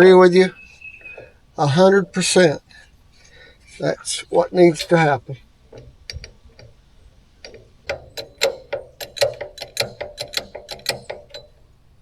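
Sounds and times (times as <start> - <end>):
ratchet tool clicking: 3.2 - 11.8.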